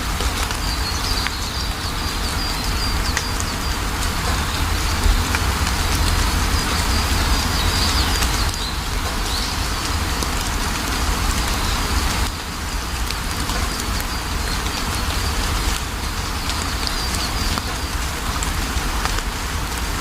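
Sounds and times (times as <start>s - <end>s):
raindrop ticks: 0.0s - 20.0s
steady rain hiss: 0.0s - 20.0s
deep low rumble: 2.3s - 11.7s.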